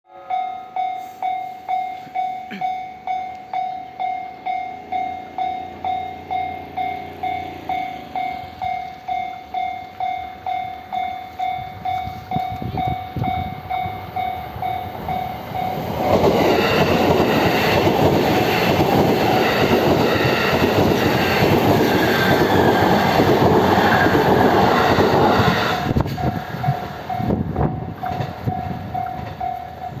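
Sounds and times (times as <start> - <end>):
level-crossing warning bell ringing: 0.1 - 30.0
train wheels clattering: 15.1 - 30.0.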